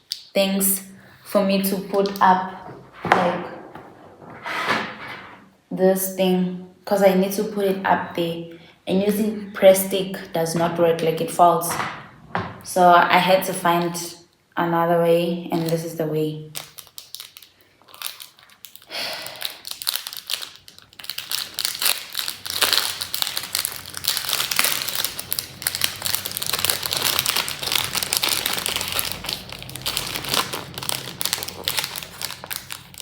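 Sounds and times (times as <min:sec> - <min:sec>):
plastic packaging crinkling: 0:01.8 - 0:04.4, 0:15.6 - 0:15.9, 0:16.5 - 0:33.0.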